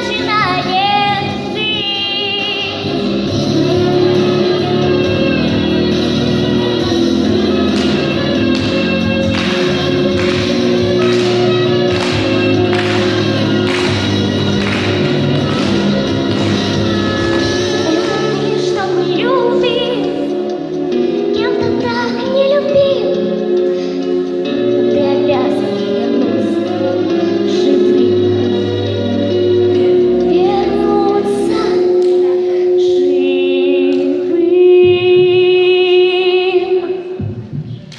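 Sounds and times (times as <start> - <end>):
backing track with steady beat: 0.7 - 24.3
girl singing a slow ballad: 17.3 - 20.4, 21.3 - 23.9, 30.2 - 37.2.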